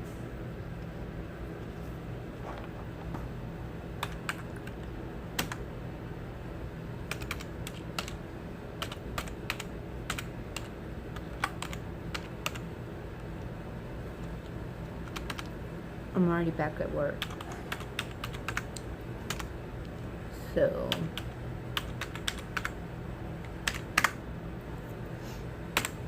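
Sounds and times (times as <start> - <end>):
steady low hum: 0.0 - 26.0
computer keyboard typing: 4.0 - 5.6, 7.1 - 8.2, 8.8 - 12.6, 14.9 - 15.5, 17.2 - 19.5, 20.9 - 22.8, 23.4 - 24.2, 25.7 - 26.0.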